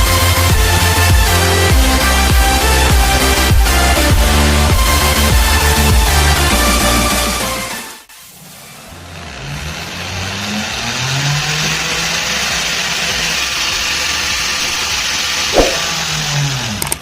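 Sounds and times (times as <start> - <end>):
machine tool motor running: 8.4 - 17.0.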